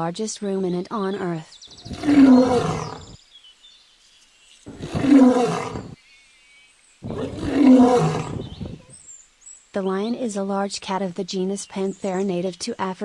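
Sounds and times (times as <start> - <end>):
large animal roaring: 1.8 - 3.2, 4.7 - 6.0, 7.0 - 8.9.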